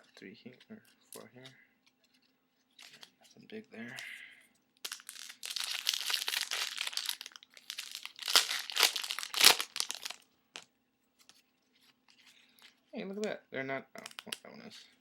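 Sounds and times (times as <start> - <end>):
wrapper tearing and crinkling: 4.9 - 10.2.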